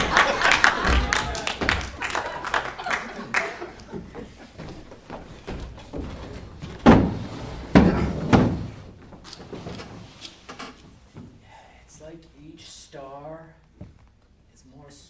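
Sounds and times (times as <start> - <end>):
low room noise: 0.0 - 15.0
loud thumps: 4.8 - 9.3.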